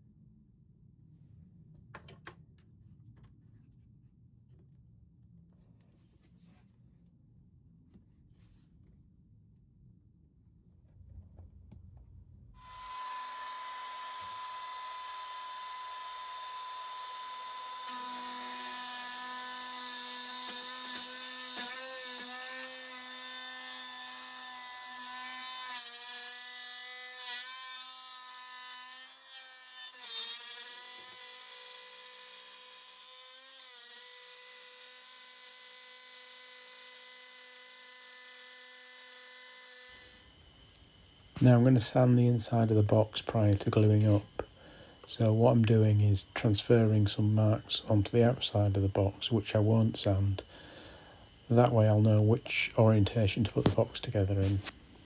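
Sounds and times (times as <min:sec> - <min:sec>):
electric router cutting wood: 0:12.6 - 0:55.0.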